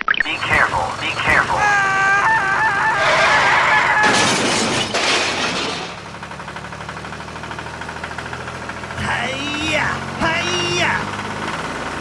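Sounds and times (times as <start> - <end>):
engine idling: 0.2 - 12.0
crashing breaking sound: 0.3 - 6.1.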